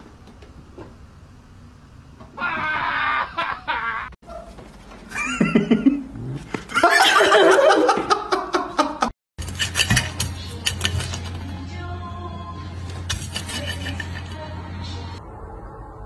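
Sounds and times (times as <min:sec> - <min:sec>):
people laughing: 0:02.4 - 0:04.2, 0:05.1 - 0:06.1, 0:06.7 - 0:09.1.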